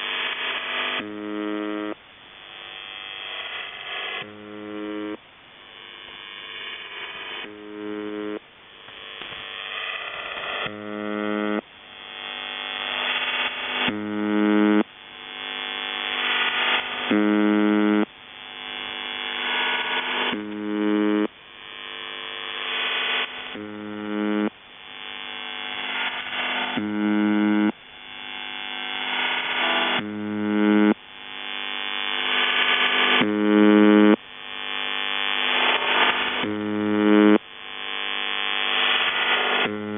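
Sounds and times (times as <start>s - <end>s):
short radio buzz tones: 0.0s - 2.0s, 2.6s - 5.2s, 6.0s - 18.1s, 18.8s - 39.9s
radio hiss: 0.0s - 39.9s.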